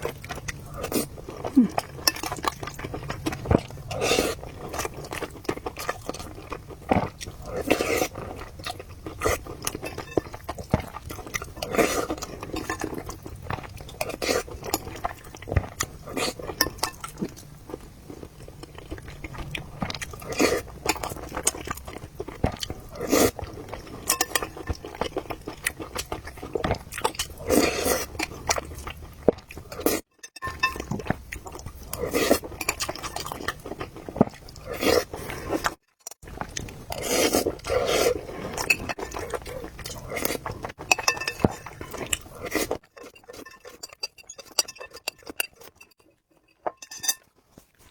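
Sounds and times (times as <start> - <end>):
person chewing food: 0.0 - 47.9
chopsticks clinking against bowl: 40.9 - 42.0, 43.0 - 47.3.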